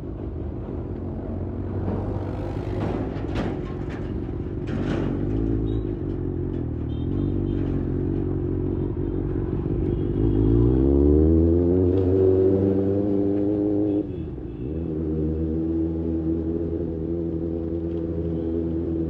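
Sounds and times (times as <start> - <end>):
motorcycle engine accelerating: 1.9 - 3.2.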